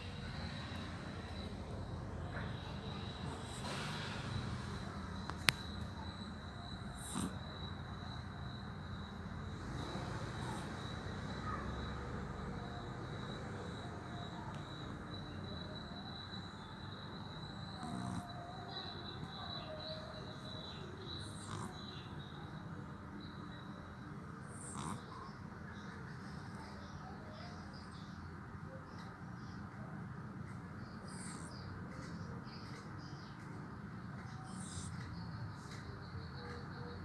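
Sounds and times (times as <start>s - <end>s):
cat snoring: 2.5s - 8.3s, 8.9s - 12.0s, 14.6s - 22.4s, 24.4s - 25.3s, 31.0s - 31.6s, 34.4s - 35.1s.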